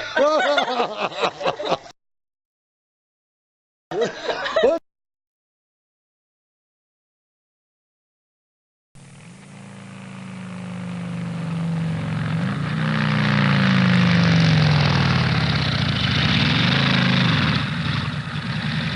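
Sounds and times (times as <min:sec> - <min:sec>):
car engine running: 0:09.0 - 0:18.9.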